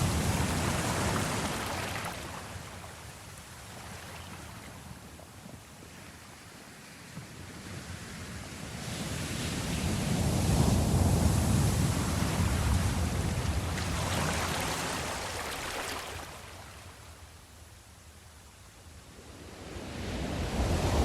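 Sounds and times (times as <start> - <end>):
ocean waves rushing: 0.0 - 2.8, 10.5 - 16.7, 19.3 - 21.0.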